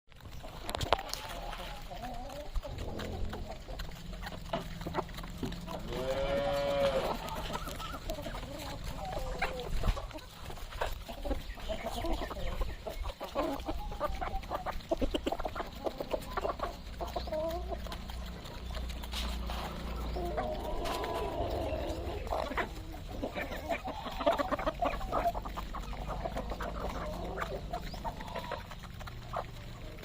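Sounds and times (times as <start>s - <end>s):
chickens clucking: 0.1s - 30.0s
low rumble: 2.6s - 7.5s.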